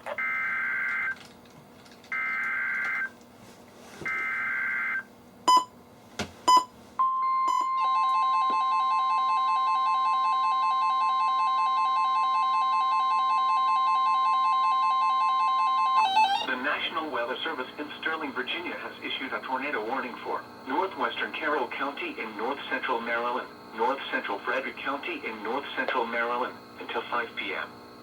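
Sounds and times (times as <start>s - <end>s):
steady warning alarm tone: 0.0s - 1.2s, 2.1s - 3.2s, 4.1s - 5.7s, 6.5s - 16.8s
pulsing warbling alert beep: 16.0s - 16.5s.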